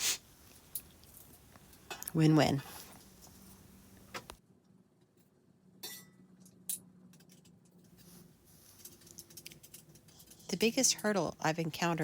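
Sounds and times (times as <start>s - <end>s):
faint clinks and knocks: 5.8s - 10.8s.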